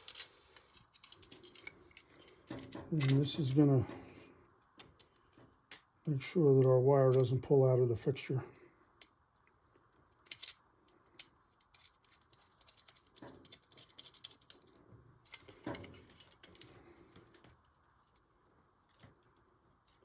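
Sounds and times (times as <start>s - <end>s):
metal clicks and rattling: 0.0s - 4.1s, 10.2s - 17.6s.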